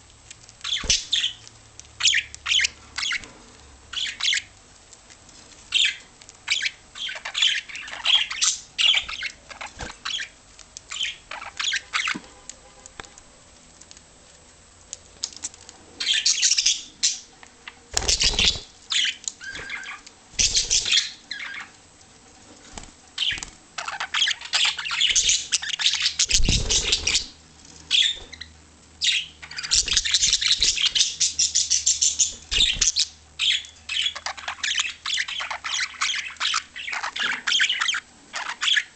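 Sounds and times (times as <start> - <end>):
budgerigars chattering: 18.0 - 21.7, 23.2 - 27.3.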